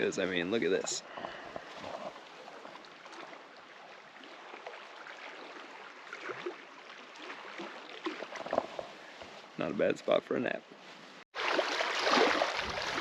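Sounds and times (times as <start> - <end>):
outdoor background hiss: 8.9 - 11.2.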